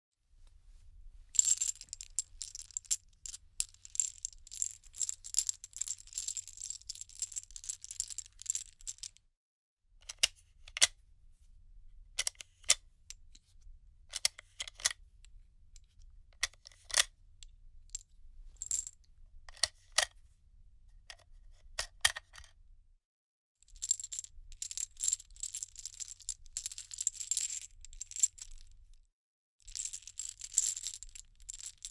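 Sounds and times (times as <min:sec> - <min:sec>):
metal cartridges rattling and clinking: 0:01.4 - 0:09.2, 0:23.7 - 0:28.7, 0:29.6 - 0:31.9.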